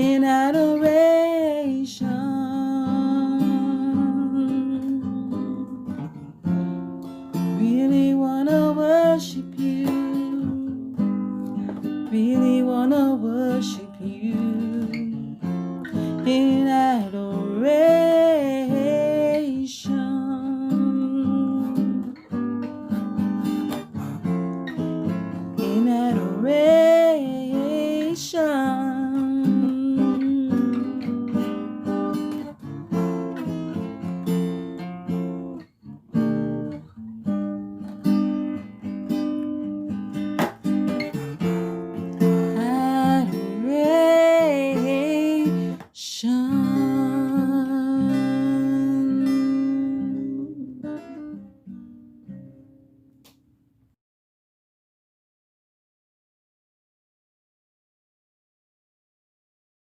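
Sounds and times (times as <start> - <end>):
person singing: 0.0 - 6.1, 7.6 - 22.2, 25.6 - 31.5, 42.2 - 51.0
acoustic guitar playing chords: 0.0 - 53.4.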